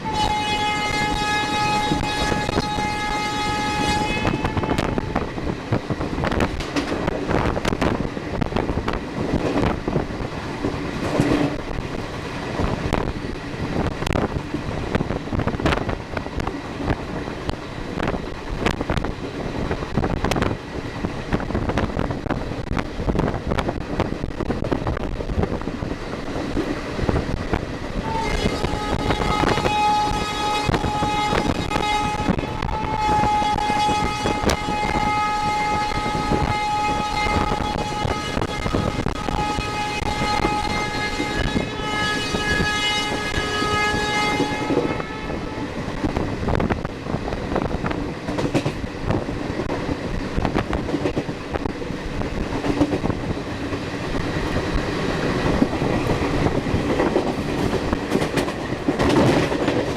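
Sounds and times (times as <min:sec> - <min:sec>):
multi-note locomotive horn: 0:00.0 - 0:05.4, 0:28.0 - 0:45.9
train wheels clattering on rails: 0:00.0 - 0:59.9.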